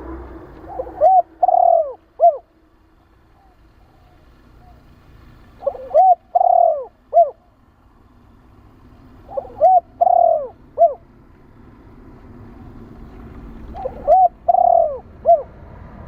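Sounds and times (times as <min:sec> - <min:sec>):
dove cooing: 0:00.0 - 0:02.5, 0:03.2 - 0:07.5, 0:09.0 - 0:11.1, 0:13.4 - 0:15.6.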